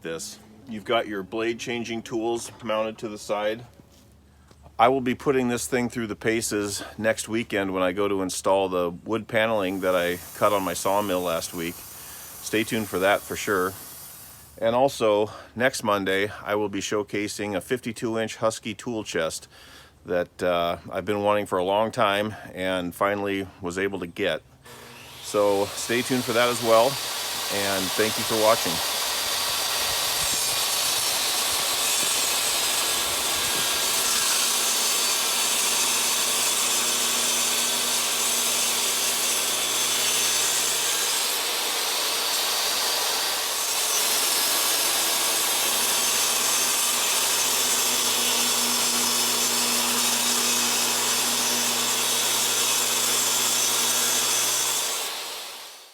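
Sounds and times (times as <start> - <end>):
power saw cutting wood: 9.6 - 14.6, 24.7 - 55.9.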